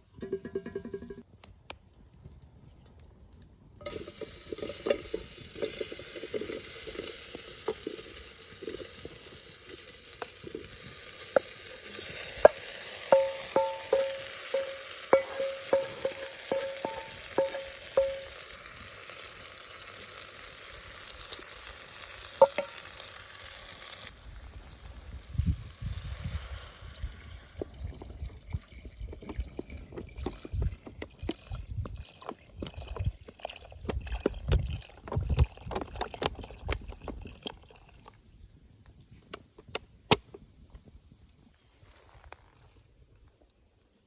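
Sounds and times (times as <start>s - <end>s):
utensil stirring and knocking pan: 0.2s - 1.2s, 12.2s - 18.4s, 22.4s - 22.8s
food sizzling in a pan: 3.9s - 27.8s.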